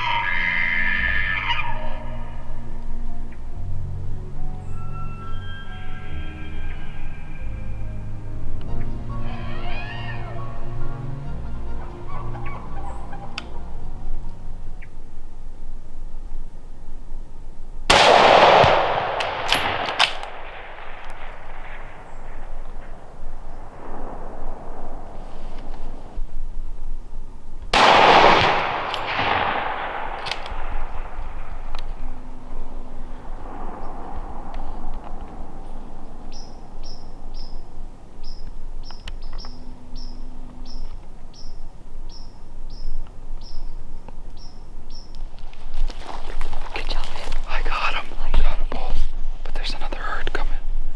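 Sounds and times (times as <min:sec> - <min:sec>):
low background noise: 0:00.0 - 0:50.9
rifle shot echoing: 0:17.9 - 0:45.0
sharp clicks: 0:18.0 - 0:21.3, 0:27.7 - 0:30.8
small bird chirping: 0:35.5 - 0:47.1.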